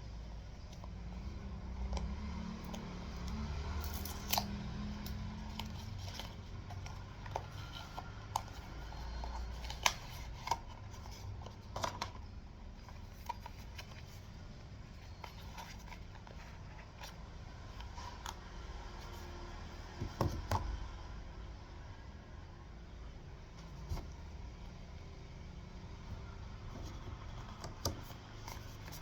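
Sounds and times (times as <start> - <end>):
packaging clicks and scraping: 2.7 - 18.5.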